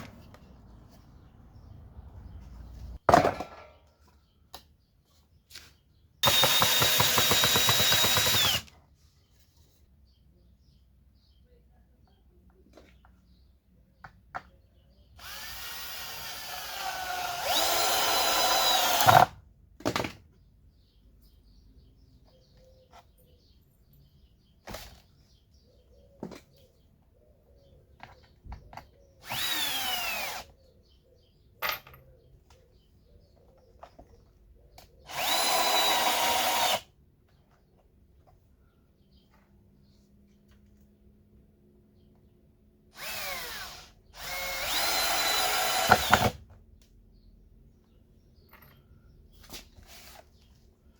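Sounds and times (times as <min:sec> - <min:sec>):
electric drill running: 0:06.2 - 0:08.6, 0:15.2 - 0:19.3, 0:29.2 - 0:30.5, 0:35.1 - 0:36.8, 0:43.0 - 0:46.4.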